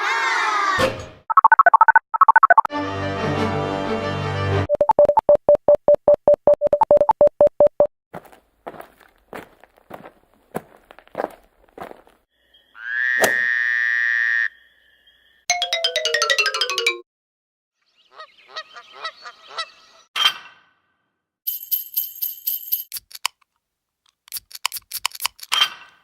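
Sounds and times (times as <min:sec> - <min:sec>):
descending run of notes: 0:15.5 - 0:17.0.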